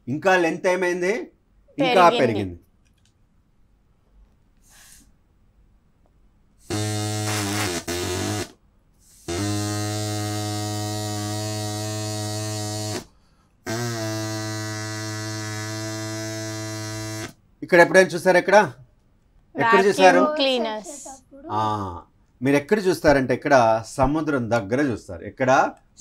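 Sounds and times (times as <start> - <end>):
straw horn buzzing honk: 6.6 - 8.6, 9.2 - 13.1, 13.7 - 17.4.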